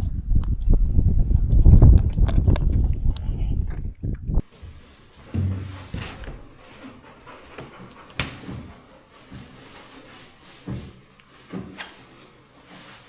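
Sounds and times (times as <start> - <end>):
knocks and thumps: 5.2 - 6.5.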